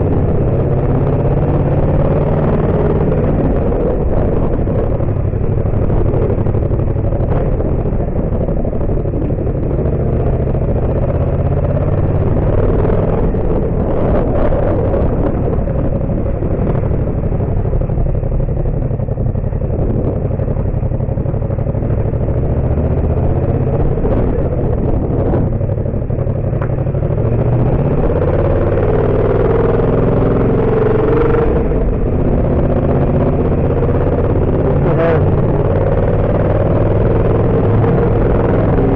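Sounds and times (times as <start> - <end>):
motorcycle engine running: 0.0 - 38.9
knocks and clatter from rough road: 3.1 - 28.4.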